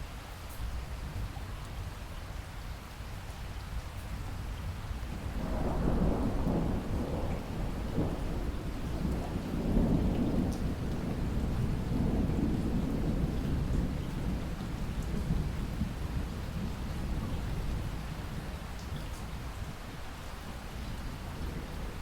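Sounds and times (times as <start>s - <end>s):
heavy rain: 0.0s - 22.0s
rolling thunder: 5.1s - 18.6s.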